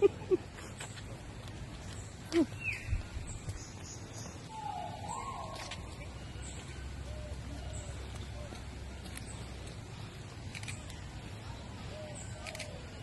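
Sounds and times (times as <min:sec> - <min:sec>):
faint high bird chirps: 0:02.3 - 0:09.4
wavering bird call: 0:04.5 - 0:08.0.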